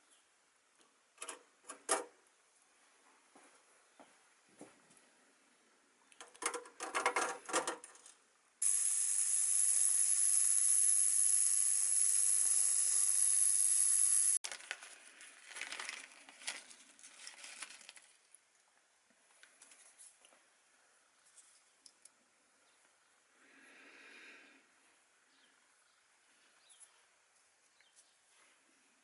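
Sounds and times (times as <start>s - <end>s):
pressurised spray hissing: 8.6s - 14.4s.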